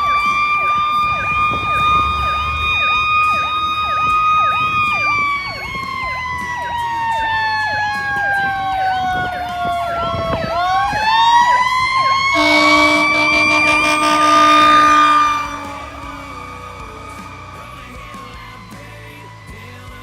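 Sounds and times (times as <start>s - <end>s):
low air horn blast: 0.0s - 3.5s, 12.0s - 18.3s
siren wailing: 0.0s - 8.3s, 10.6s - 18.6s
electronic siren yelping: 12.2s - 17.6s.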